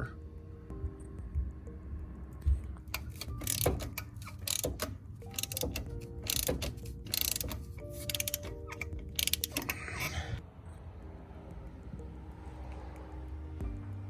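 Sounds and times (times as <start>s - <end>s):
ratchet wrench clicking: 2.9s - 10.2s.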